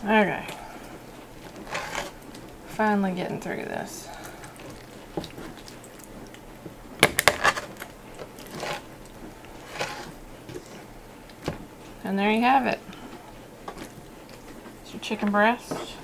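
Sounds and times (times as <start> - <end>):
wet slicing and squishing: 4.1 - 10.2
knife cracking through bone: 7.0 - 8.9.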